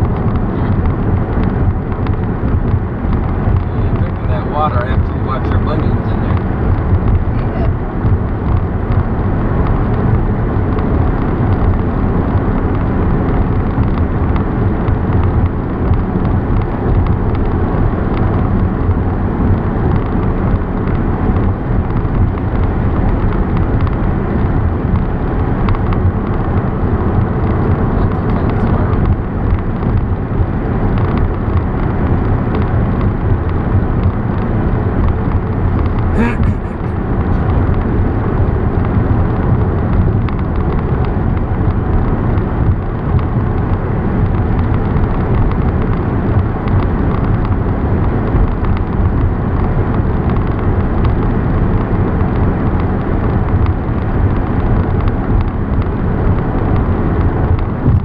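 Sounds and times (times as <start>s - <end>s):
car driving on highway: 0.0s - 58.0s.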